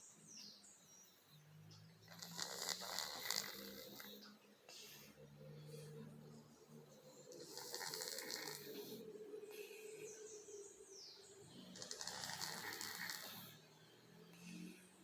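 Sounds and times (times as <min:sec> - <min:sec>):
kitten snoring: 0:02.0 - 0:06.3, 0:07.1 - 0:09.6, 0:11.6 - 0:13.8.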